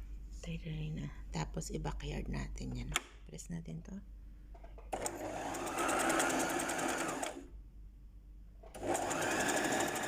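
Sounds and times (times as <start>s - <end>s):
sewing machine stitching: 4.9s - 7.5s, 8.7s - 10.0s.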